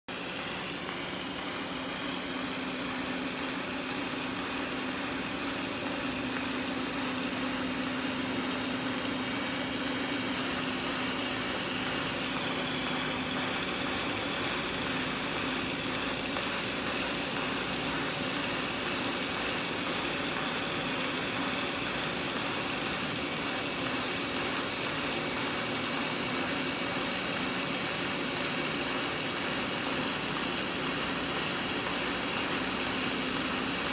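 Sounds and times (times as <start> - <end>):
machine hiss and low hum: 0.1 - 33.9.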